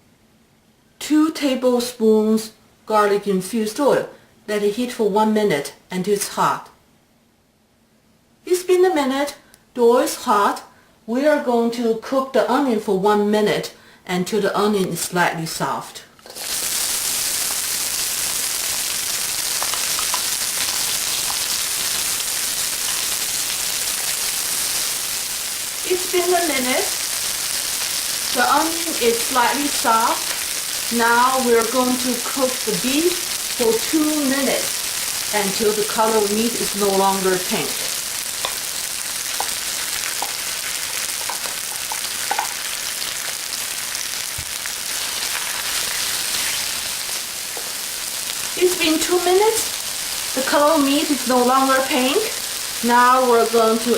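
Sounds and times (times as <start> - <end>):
onion sizzling in hot oil: 16.2 - 53.9.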